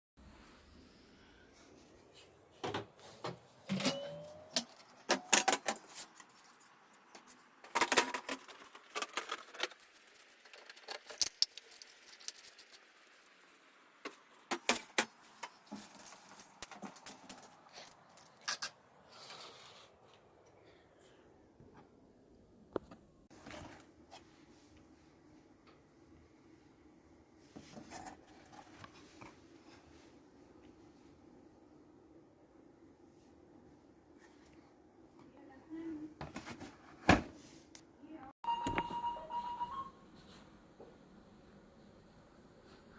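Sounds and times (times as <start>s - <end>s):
small hard objects clicking: 7.0s - 12.8s.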